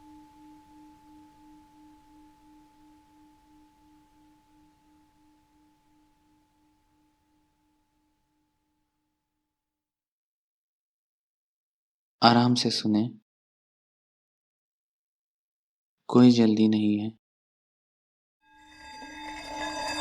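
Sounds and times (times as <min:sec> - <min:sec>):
singing bowl ringing: 0:00.0 - 0:08.4, 0:18.5 - 0:20.0.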